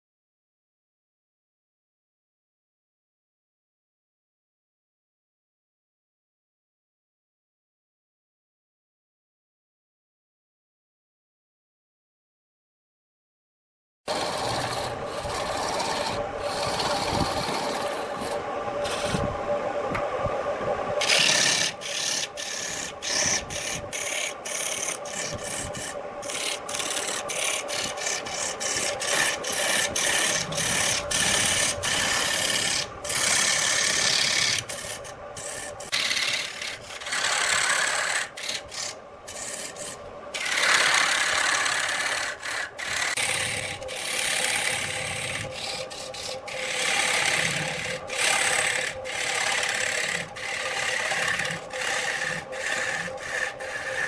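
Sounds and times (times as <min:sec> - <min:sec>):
tool scraping spinning wood: 0:14.1 - 0:20.0, 0:20.9 - 0:54.0
wood lathe motor hum: 0:14.1 - 0:20.1, 0:21.0 - 0:54.0.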